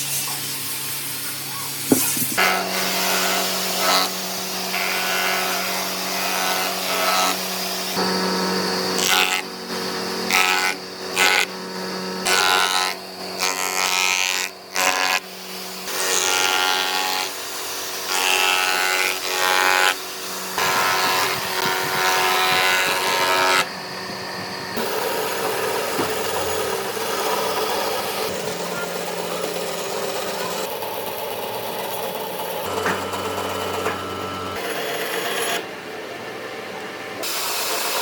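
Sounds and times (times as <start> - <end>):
electric power tool cutting wood: 0.0 - 35.7, 37.2 - 38.0.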